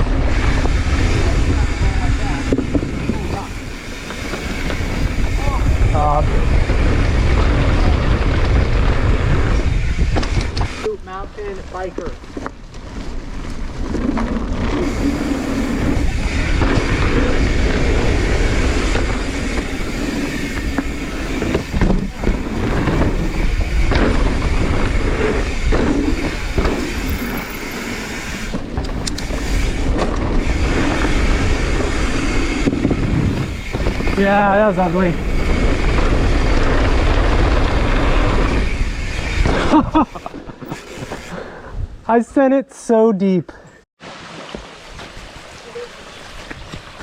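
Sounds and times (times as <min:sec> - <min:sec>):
wind on microphone: 0:00.0 - 0:12.1, 0:12.9 - 0:42.1
tyres rushing on dirt: 0:00.0 - 0:41.3
bike rattling and knocking: 0:00.0 - 0:41.4.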